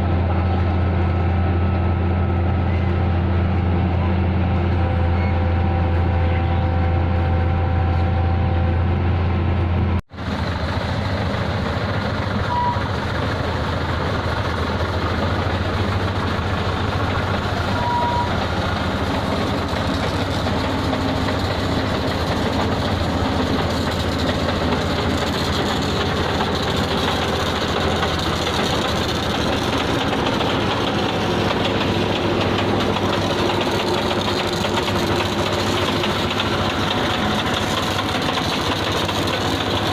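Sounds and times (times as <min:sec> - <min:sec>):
rough noisy engine: 0:00.0 - 0:39.9
short beeps: 0:17.8 - 0:18.3.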